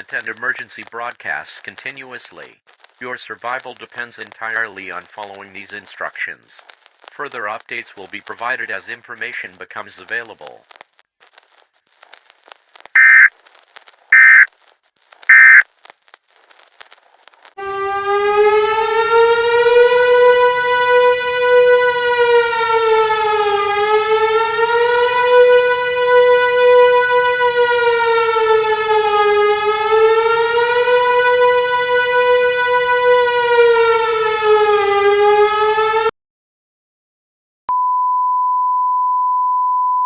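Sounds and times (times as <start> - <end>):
civil defense siren wailing: 17.6 - 36.1.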